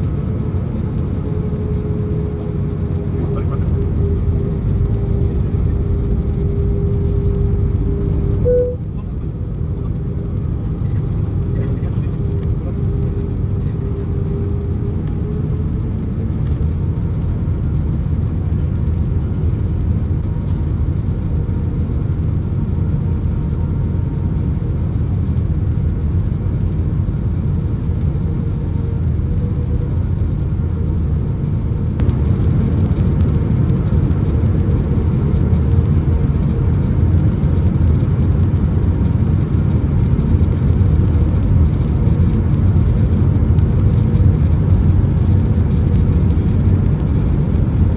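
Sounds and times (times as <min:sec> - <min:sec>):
faint steady hum: 0:00.0 - 0:11.5
airplane cabin engine rumble: 0:00.0 - 0:47.9.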